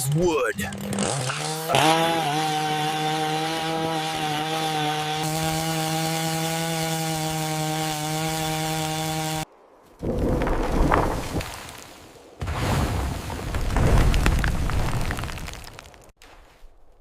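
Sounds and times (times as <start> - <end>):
chainsaw running at high speed: 0.5 - 9.4.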